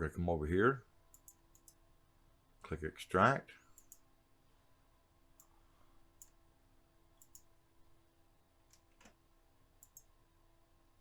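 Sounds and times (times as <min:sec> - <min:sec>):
faint electrical hum: 0:00.0 - 0:11.0
computer mouse clicks: 0:01.1 - 0:01.8, 0:03.8 - 0:04.1, 0:05.4 - 0:05.6, 0:06.2 - 0:06.4, 0:07.2 - 0:07.5, 0:09.8 - 0:10.1.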